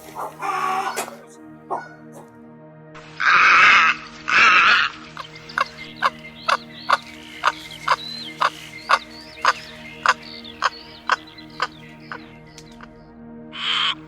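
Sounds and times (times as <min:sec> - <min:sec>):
heron squawking: 0:00.0 - 0:02.3, 0:03.1 - 0:13.0, 0:13.6 - 0:14.0
short ticking bird calls: 0:03.2 - 0:13.0.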